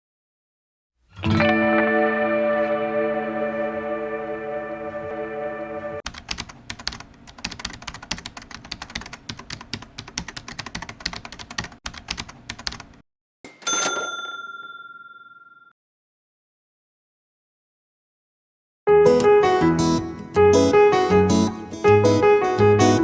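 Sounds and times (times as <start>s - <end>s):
music: 1.2s - 6.0s, 18.9s - 23.0s
bell-like ding: 13.5s - 15.7s.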